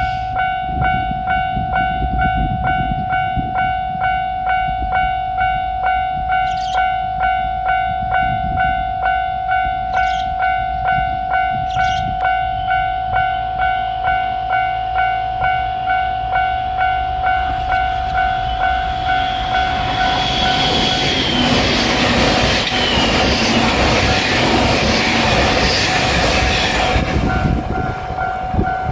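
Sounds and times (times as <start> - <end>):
crossing alarm bell dinging: 0.0 - 28.9
train rumble and wheel noise: 0.0 - 28.9.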